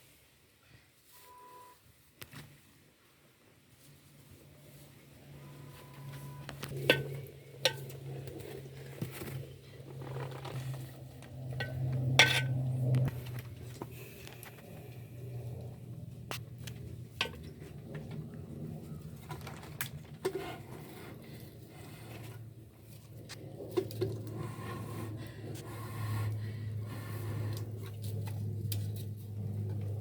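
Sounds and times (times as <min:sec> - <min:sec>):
low steady hum: 0:03.8 - 0:30.0
utensils knocking against a pot: 0:06.7 - 0:08.0.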